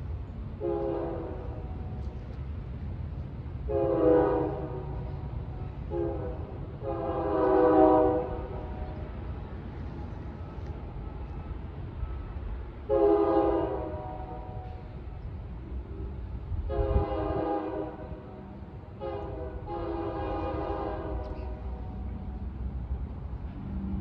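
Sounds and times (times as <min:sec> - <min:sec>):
train rumbling: 0:00.0 - 0:24.0
train horn blasts: 0:00.6 - 0:02.2, 0:03.6 - 0:09.1, 0:11.0 - 0:15.0, 0:16.0 - 0:22.2.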